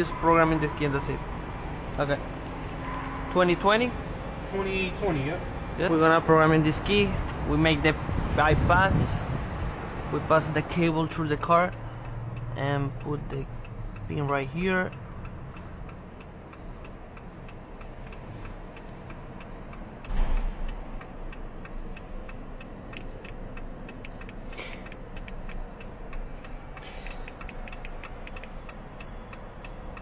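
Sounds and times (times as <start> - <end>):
turn-signal flasher ticking: 10.9 - 30.0
sharp click: 20.0 - 21.8
loud thump: 20.1 - 20.7.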